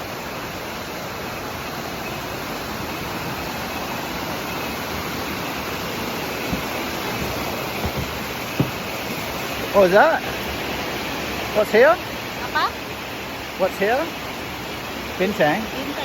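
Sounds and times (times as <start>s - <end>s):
waterfall rushing: 0.0s - 16.0s
faint knocks: 6.4s - 9.3s.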